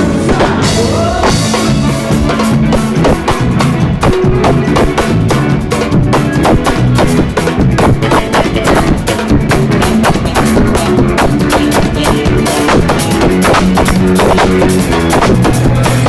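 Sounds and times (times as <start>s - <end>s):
band playing loud music: 0.0s - 16.0s
drum kit rapid strikes: 0.0s - 16.0s.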